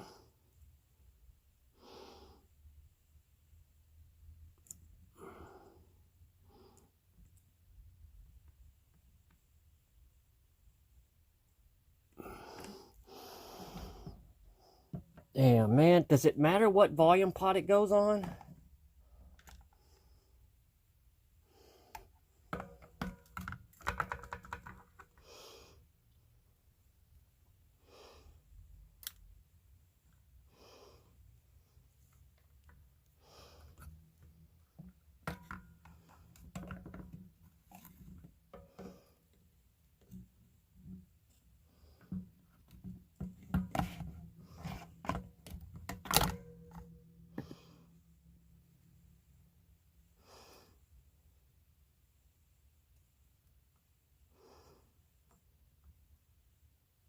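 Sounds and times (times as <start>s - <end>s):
soft breaths: 1.6s - 2.8s, 5.0s - 7.3s, 12.1s - 15.2s, 25.0s - 26.4s, 27.6s - 28.8s, 29.8s - 36.4s, 46.5s - 51.5s, 54.0s - 55.3s.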